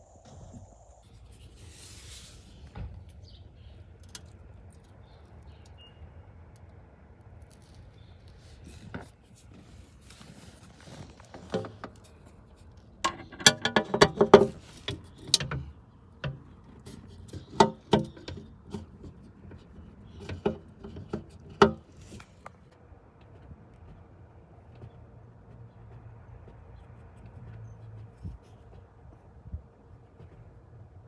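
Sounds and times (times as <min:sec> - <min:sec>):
hand tools clicking and knocking: 0:13.0 - 0:22.4
rattling clicks: 0:13.0 - 0:22.4.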